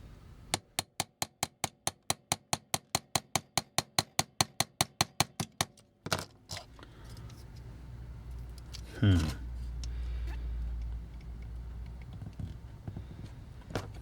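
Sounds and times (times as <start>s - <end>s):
low steady hum: 0.0s - 0.8s, 6.5s - 14.0s.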